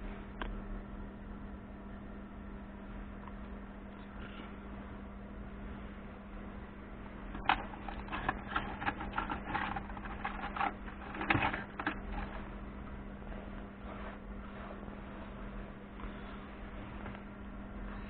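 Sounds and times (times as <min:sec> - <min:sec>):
steady low hum: 0:00.0 - 0:18.0
hard objects clattering: 0:07.3 - 0:12.6.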